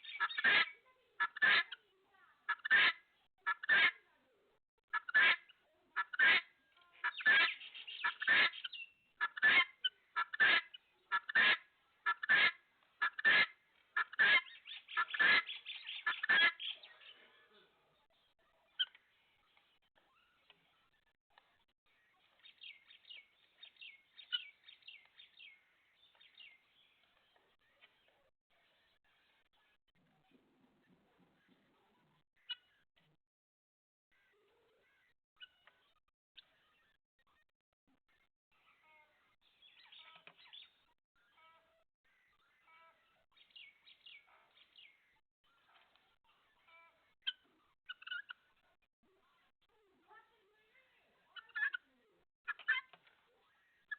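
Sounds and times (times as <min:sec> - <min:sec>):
faint chickens calling: 0:00.0 - 0:04.0, 0:04.9 - 0:17.8.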